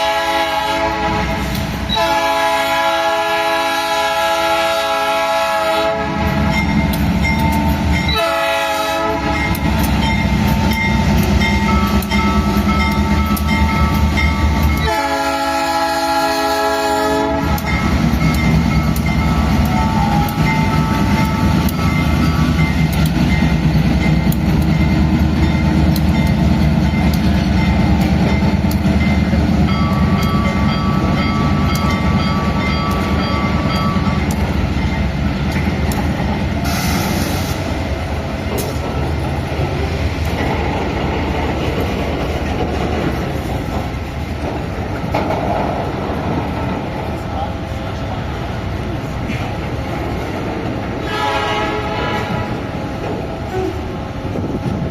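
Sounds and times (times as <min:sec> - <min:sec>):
locomotive horn: 0:00.0 - 0:06.6, 0:08.0 - 0:09.6, 0:14.7 - 0:17.8, 0:19.3 - 0:21.6, 0:36.6 - 0:37.6, 0:51.0 - 0:52.7, 0:53.4 - 0:54.0
train rumbling by: 0:00.0 - 0:54.9
wheels clacking over rail joints: 0:09.2 - 0:15.3, 0:17.3 - 0:36.7, 0:37.5 - 0:51.1.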